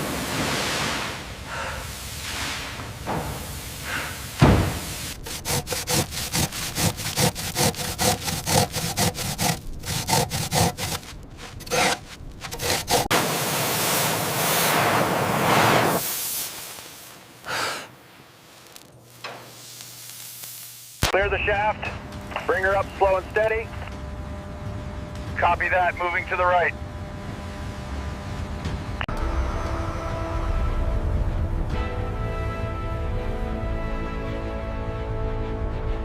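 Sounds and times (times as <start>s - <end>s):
steady rushing noise: 0.0s - 18.9s, 21.0s - 29.0s
rasping strokes: 5.0s - 13.1s.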